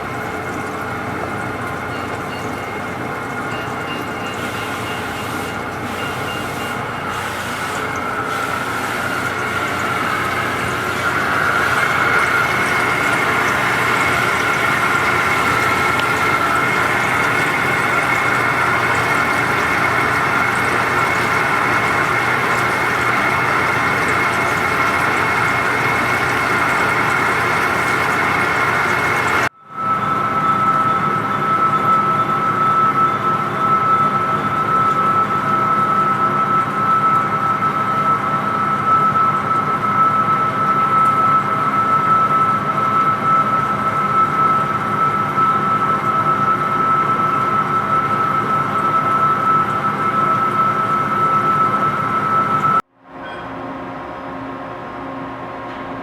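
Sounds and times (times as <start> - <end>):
lathe machining: 1.0 - 29.5
high lathe whine: 2.6 - 34.4.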